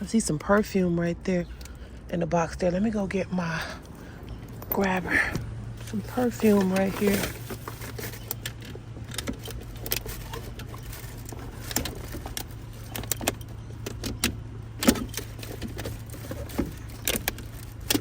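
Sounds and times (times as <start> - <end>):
steady low hum: 0.0 - 18.0
objects clicking and rattling: 5.8 - 18.0.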